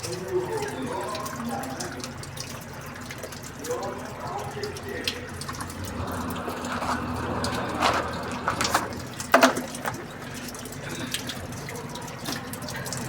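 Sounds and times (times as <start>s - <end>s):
water running: 0.0s - 13.0s.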